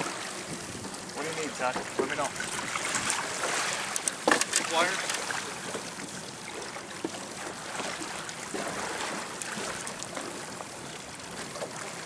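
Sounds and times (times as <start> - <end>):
water trickling beside a boat: 0.0 - 12.0.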